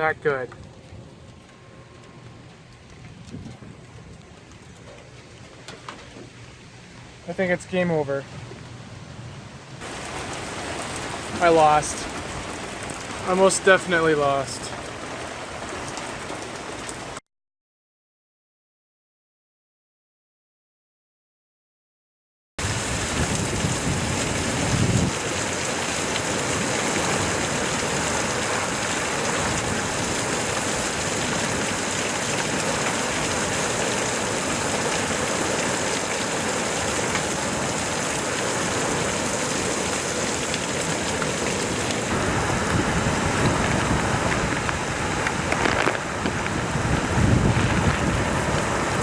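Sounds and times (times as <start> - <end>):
heavy rain hissing: 9.8 - 17.2, 22.6 - 49.0.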